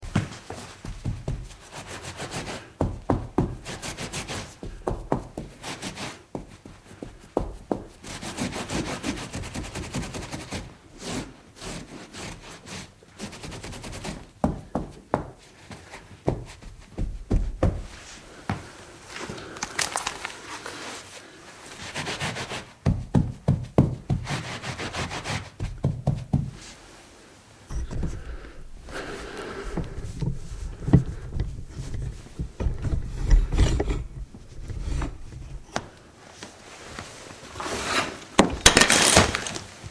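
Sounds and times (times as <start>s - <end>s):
sponge scrubbing hard surface: 24.1s - 25.6s.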